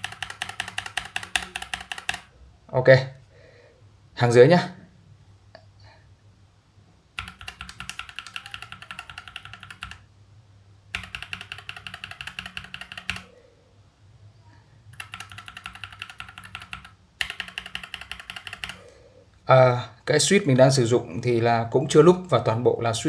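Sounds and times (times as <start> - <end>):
fast typing on mechanical keyboard: 0.0 - 2.3, 7.2 - 10.0, 10.9 - 13.3, 14.9 - 18.9.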